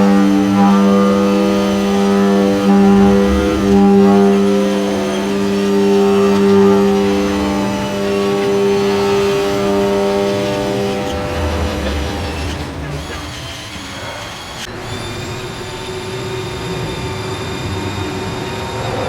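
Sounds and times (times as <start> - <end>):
electronic synth music: 2.5 - 13.1.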